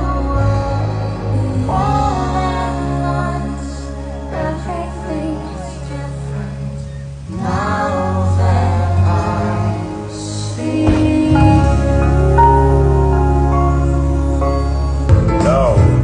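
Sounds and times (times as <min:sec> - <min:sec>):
singing: 0:00.0 - 0:15.8
soundtrack music with bass notes: 0:00.0 - 0:16.0.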